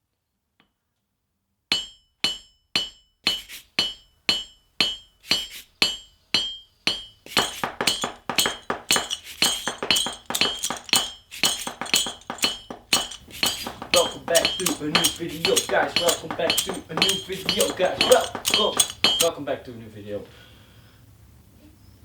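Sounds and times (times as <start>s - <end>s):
hammer striking steel on anvil: 1.7s - 19.3s.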